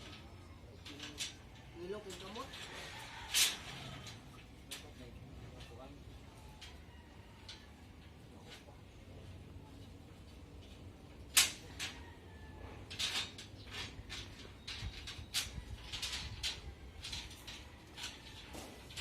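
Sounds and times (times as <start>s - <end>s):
metallic clicks of steel bars: 0.0s - 5.8s, 10.3s - 12.0s, 12.8s - 19.0s.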